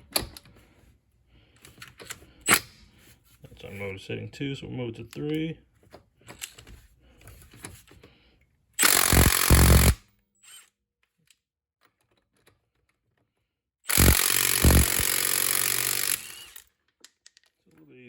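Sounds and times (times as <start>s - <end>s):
impact wrench hammering: 8.8s - 10.0s, 13.9s - 16.6s.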